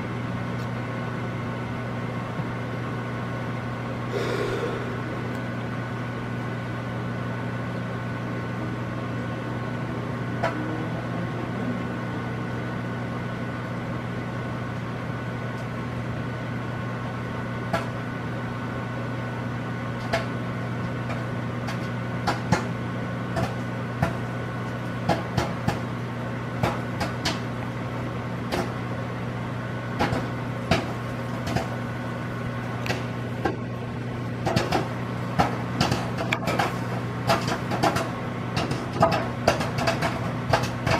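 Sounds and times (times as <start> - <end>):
microwave oven humming: 0.0 - 40.9
popcorn popping: 21.0 - 25.9, 26.6 - 27.7, 30.0 - 31.9, 34.4 - 40.9.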